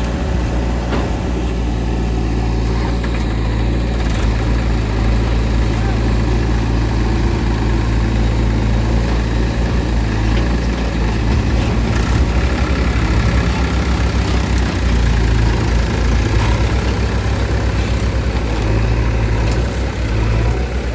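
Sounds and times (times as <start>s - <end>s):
diesel engine idling: 0.5s - 20.9s.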